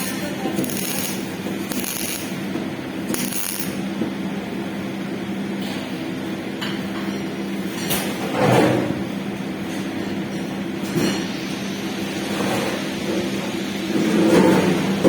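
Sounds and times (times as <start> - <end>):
electrical hum: 0.0 - 5.6.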